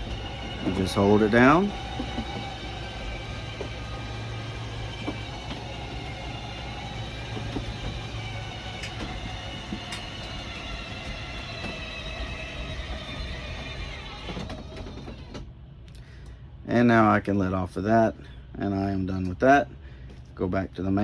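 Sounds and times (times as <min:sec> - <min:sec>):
engine idling: 0:00.0 - 0:15.4
mechanical hum of slide mechanism: 0:00.0 - 0:15.6.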